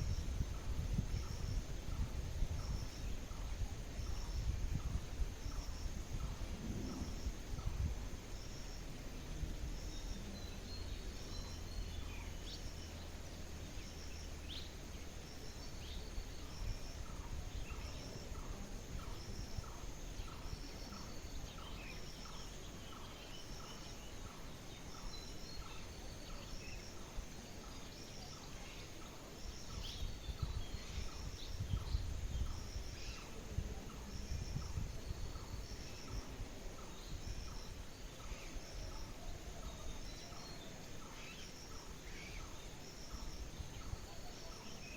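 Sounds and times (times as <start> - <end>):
steady low rumble: 0.0 - 23.6.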